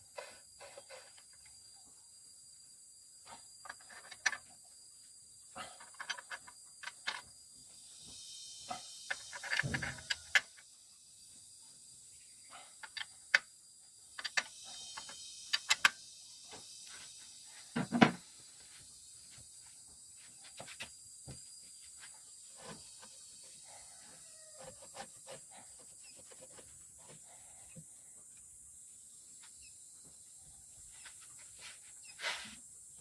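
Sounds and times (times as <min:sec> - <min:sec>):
brief scrape: 0:31.6 - 0:32.6.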